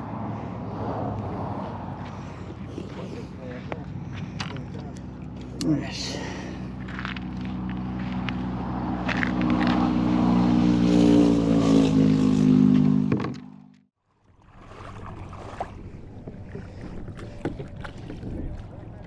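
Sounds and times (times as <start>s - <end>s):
engine humming: 0.0s - 13.8s.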